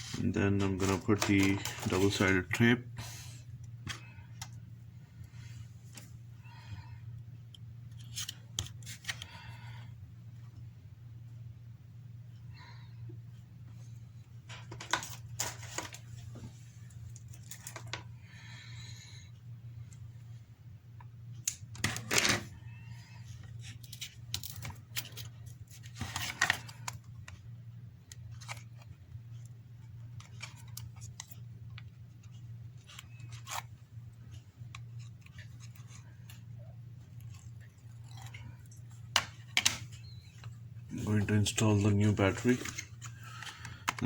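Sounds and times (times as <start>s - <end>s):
adhesive tape clicks and rustles: 28.0s - 36.4s.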